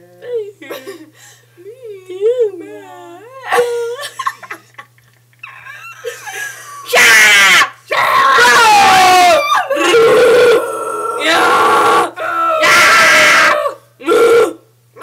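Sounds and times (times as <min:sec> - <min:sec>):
person screaming: 0:06.9 - 0:14.6.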